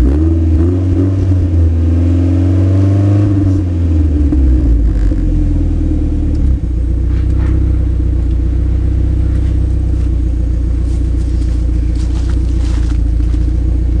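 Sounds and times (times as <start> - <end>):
car engine idling: 3.4 - 14.0.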